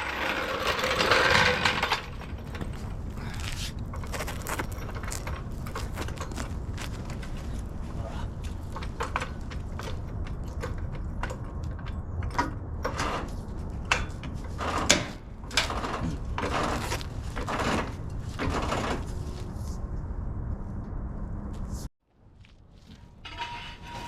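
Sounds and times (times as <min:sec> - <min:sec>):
scraping sounds: 0:00.0 - 0:10.8, 0:22.7 - 0:24.0
steady low rumble: 0:00.1 - 0:21.9.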